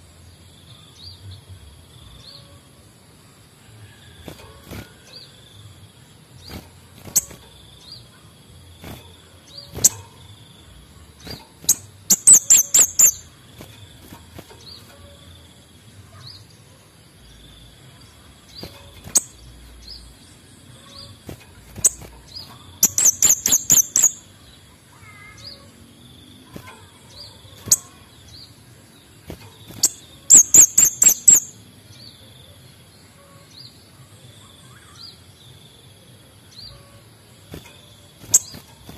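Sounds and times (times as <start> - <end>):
songbird trills: 0.0 - 38.9
sharp high bird calls: 11.2 - 13.7, 20.7 - 24.3, 29.4 - 31.6.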